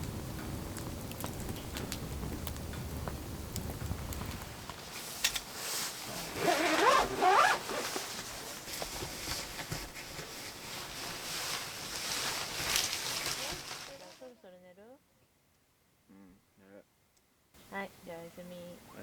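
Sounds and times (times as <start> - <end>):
zipper being pulled: 5.4 - 9.4.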